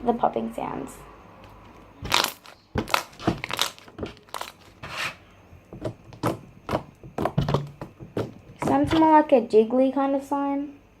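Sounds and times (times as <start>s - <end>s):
slime popping: 2.0s - 4.7s.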